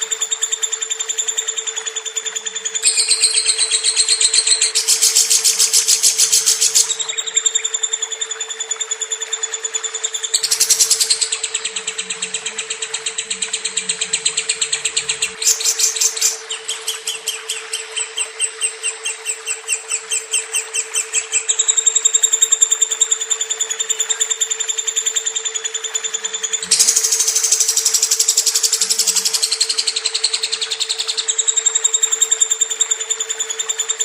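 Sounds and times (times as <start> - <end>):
lovebird chattering: 2.6 - 9.2, 10.0 - 33.0
steady low hum: 2.6 - 23.0.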